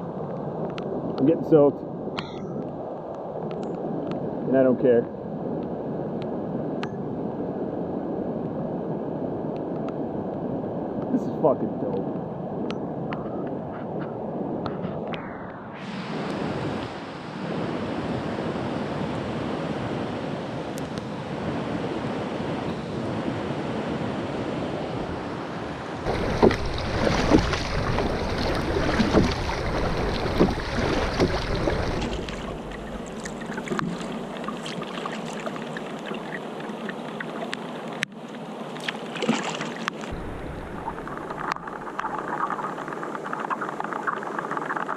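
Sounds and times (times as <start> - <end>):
water splashing around a kayak: 25.2 - 44.9
steady rain: 26.0 - 34.5, 40.1 - 44.9
wind buffeting microphone: 26.0 - 35.9, 40.1 - 42.7.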